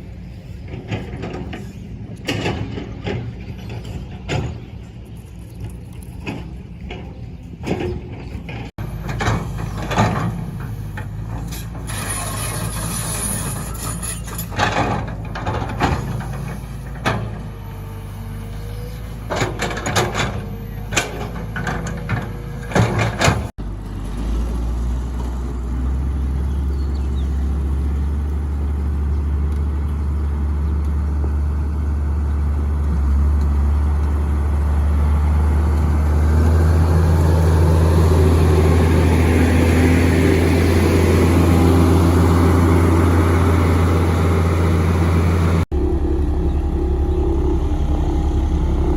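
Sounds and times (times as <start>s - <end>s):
construction machinery engine running: 0.0s - 48.9s
low engine drone: 23.2s - 48.9s.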